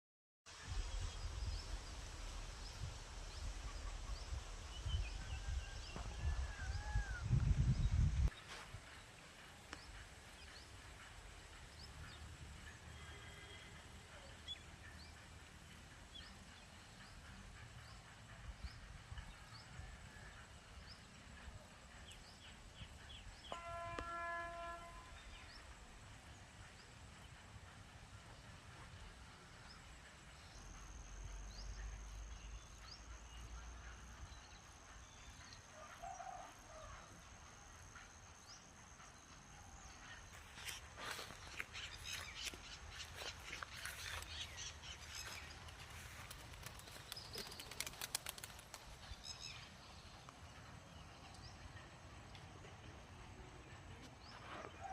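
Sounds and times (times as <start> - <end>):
faint outdoor ambience: 0.5 - 54.9
horn-like tone: 23.5 - 25.5.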